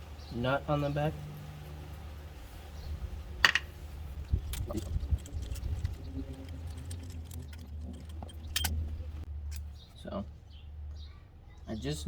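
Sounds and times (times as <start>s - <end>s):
bolts scratching and clicking: 4.2s - 9.8s.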